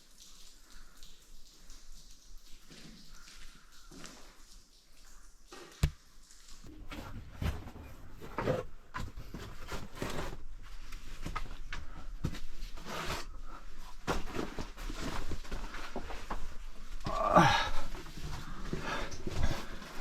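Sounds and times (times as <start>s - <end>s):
people clambering through cave: 14.1s - 20.0s.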